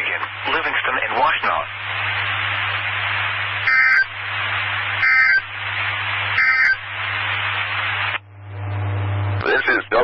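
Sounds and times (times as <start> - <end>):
radio hiss: 0.0 - 10.0
short digital data bursts: 3.6 - 4.2, 5.0 - 5.5, 6.4 - 6.9
low hum: 5.6 - 9.4.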